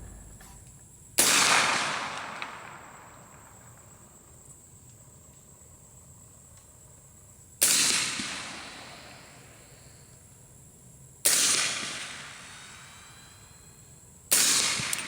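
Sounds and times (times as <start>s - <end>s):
suppressed rifle shots: 0.0s - 0.7s.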